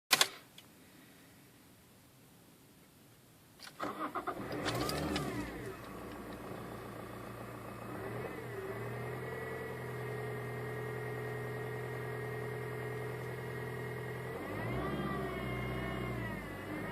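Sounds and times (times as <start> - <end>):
diesel engine cranking and idling: 3.7 - 16.9.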